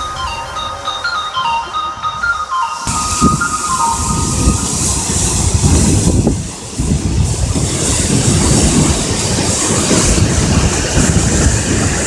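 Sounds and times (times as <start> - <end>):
waterfall roaring: 0.0 - 7.0.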